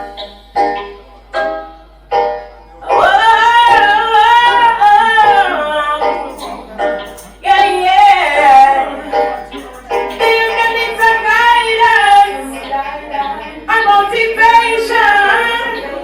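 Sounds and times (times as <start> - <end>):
music: 0.0 - 16.0
woman singing long notes: 2.9 - 6.8, 7.4 - 9.4.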